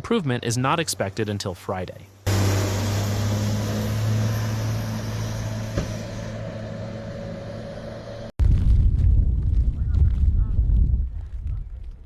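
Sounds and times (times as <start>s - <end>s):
vehicle engine running: 2.3s - 8.3s.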